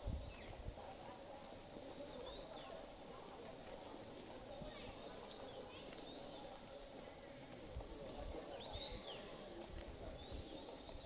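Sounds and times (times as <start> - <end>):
faint outdoor murmur: 0.0 - 11.0
wild birds chirping: 1.9 - 3.2, 4.3 - 9.5.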